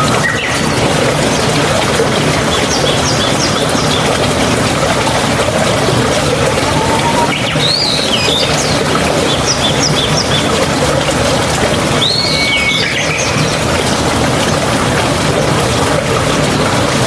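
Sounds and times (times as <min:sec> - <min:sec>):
flowing water: 0:00.0 - 0:17.0
songbirds calling: 0:02.4 - 0:05.1, 0:05.9 - 0:10.6, 0:12.0 - 0:13.6.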